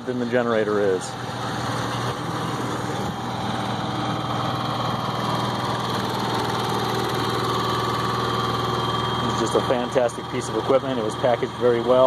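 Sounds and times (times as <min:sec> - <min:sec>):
generator running: 0:00.0 - 0:12.0
pickup truck engine hum: 0:01.2 - 0:09.4.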